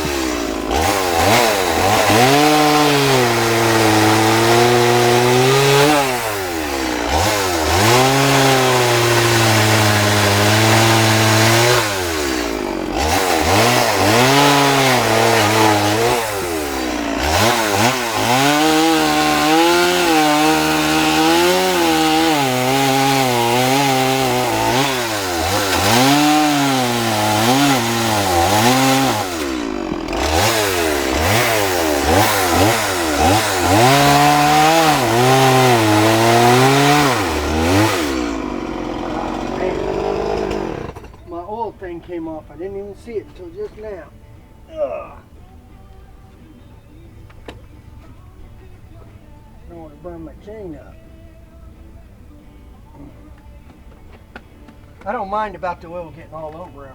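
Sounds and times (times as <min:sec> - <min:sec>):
chainsaw cutting wood: 0:00.0 - 0:44.1.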